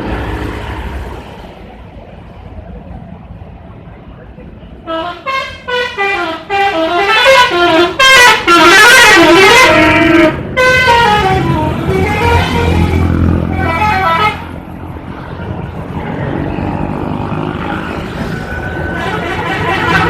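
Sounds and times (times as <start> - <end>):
multi-tone bus horn tune: 4.7 - 14.6, 18.9 - 20.0.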